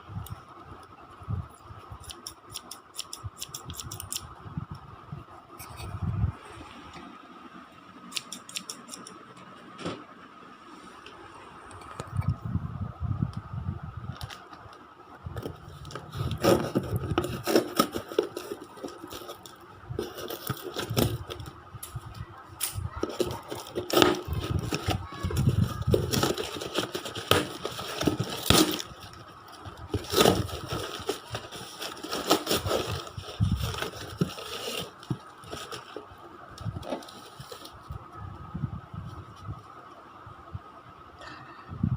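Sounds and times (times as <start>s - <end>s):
packaging crackling and tearing: 15.4s - 22.0s, 22.6s - 37.8s.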